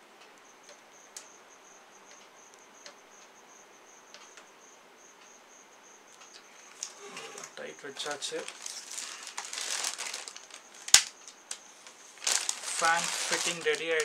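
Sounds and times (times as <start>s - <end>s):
faint clicks: 0.2s - 1.4s, 2.0s - 3.4s, 4.1s - 4.5s, 6.1s - 8.7s
cricket chirping trill: 0.3s - 14.0s.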